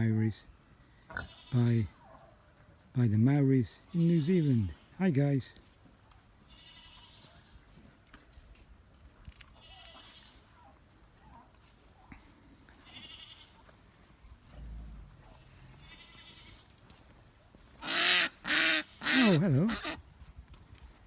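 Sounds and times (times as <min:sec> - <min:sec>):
distant goats bleating: 0:01.1 - 0:01.9, 0:03.9 - 0:05.0, 0:06.4 - 0:07.7, 0:09.5 - 0:10.4, 0:12.7 - 0:13.7, 0:15.3 - 0:16.8, 0:17.8 - 0:20.0.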